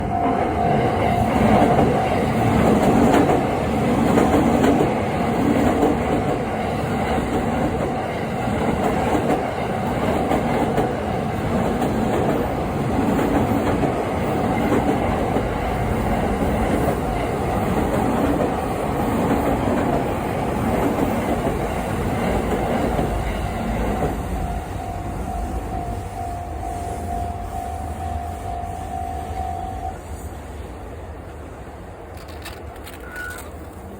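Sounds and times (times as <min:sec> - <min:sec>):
level crossing warning tone: 0:24.3 - 0:30.0.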